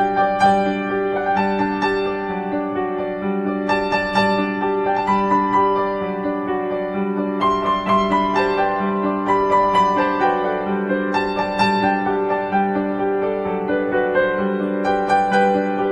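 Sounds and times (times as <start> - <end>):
piano music: 0.0 - 15.9.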